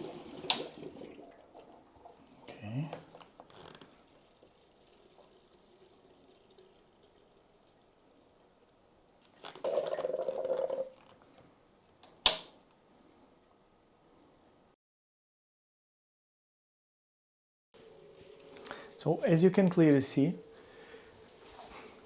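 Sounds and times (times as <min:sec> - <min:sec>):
liquid pouring into reservoir: 0:00.0 - 0:11.2
sharp click: 0:12.3 - 0:12.6.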